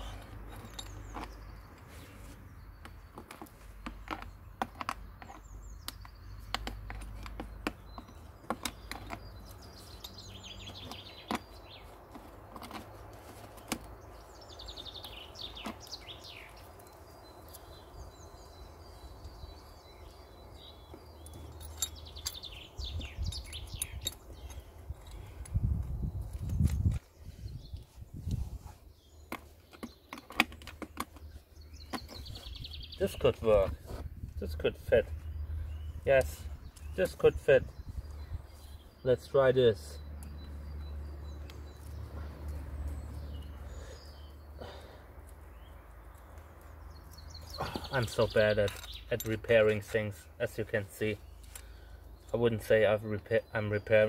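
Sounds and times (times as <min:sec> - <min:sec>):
small birds chirping: 0:00.0 - 0:54.0
clinks of tools being handled: 0:00.5 - 0:01.3, 0:21.2 - 0:22.6.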